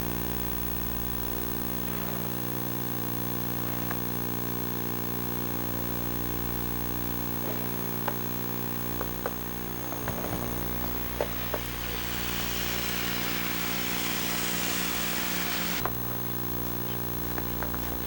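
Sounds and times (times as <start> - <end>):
electrical buzz: 0.0 - 18.0
hiss: 9.3 - 15.8.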